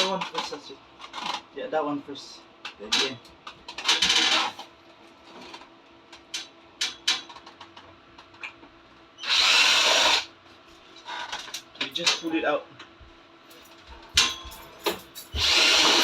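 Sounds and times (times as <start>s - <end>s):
power drill running: 9.2s - 10.3s, 15.3s - 16.0s.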